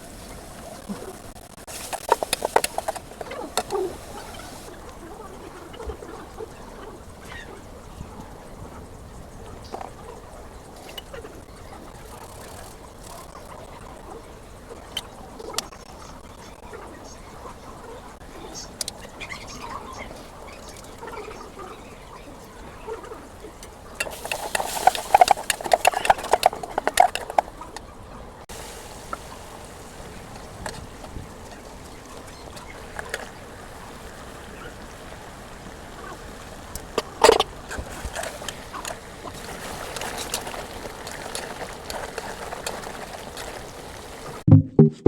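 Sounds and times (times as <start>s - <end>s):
utensil clicking and scraping: 1.6s - 4.6s, 24.0s - 27.6s
meat sizzling in a pan: 28.5s - 44.4s.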